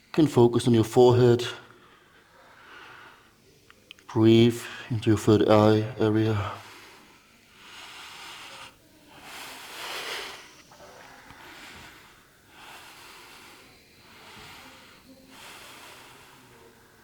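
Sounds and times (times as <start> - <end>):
person breathing deeply: 6.4 - 17.0.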